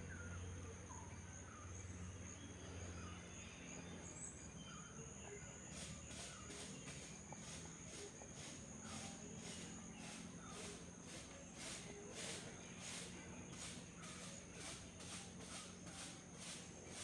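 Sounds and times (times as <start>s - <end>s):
faint bird chirps: 0.0s - 17.0s
pulsing insect call: 5.6s - 17.0s
high-pitched insect drone: 5.7s - 17.0s.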